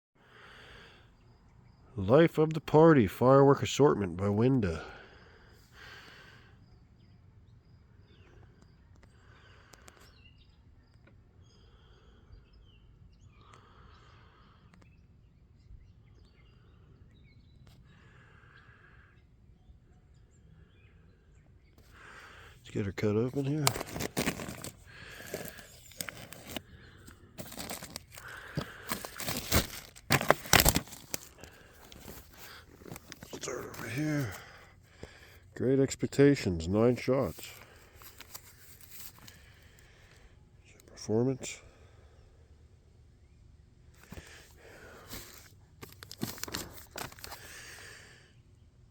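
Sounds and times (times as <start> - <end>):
distant birds chirping: 0.2 - 48.7
tape and cardboard tearing: 23.4 - 26.6, 27.4 - 34.3, 45.1 - 47.5
cardboard box being cut open: 23.6 - 26.6, 27.4 - 33.2.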